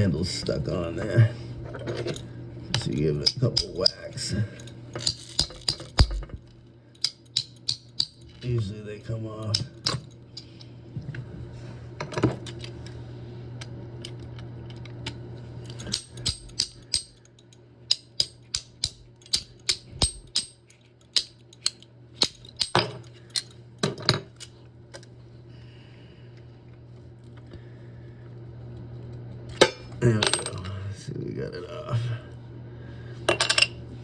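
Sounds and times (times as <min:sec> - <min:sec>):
tool tapping metal valve handle: 0:07.0 - 0:08.2, 0:17.9 - 0:20.6.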